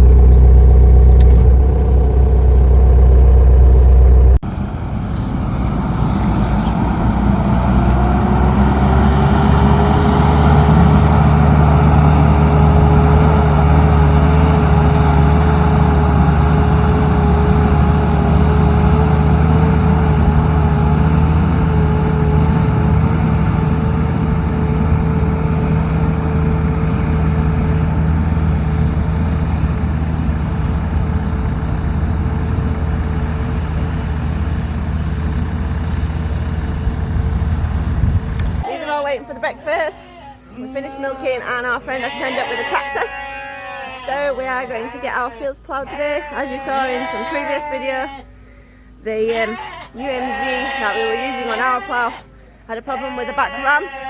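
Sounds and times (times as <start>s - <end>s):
tractor engine whining: 0.0s - 41.9s.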